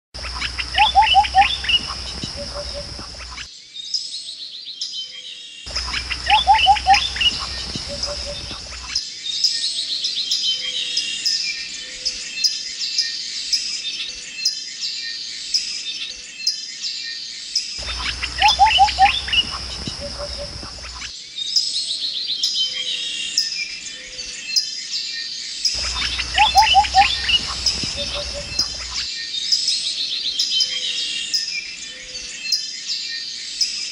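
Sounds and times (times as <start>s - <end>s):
low hum: 0.2s - 3.5s, 5.7s - 8.9s, 17.8s - 21.1s, 25.8s - 29.1s
birds chirping and trilling: 0.2s - 33.9s.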